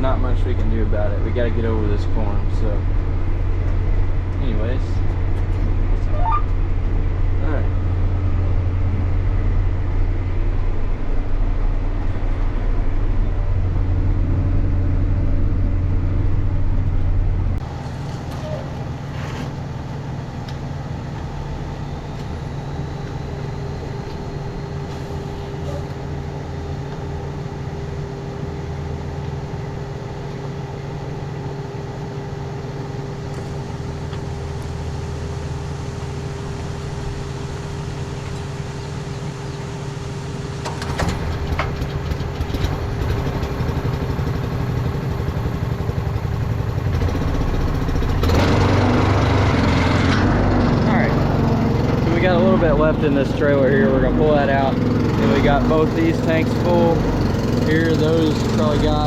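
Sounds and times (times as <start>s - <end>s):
tractor engine running: 0.0s - 59.0s
knocks and rattles: 40.6s - 44.6s.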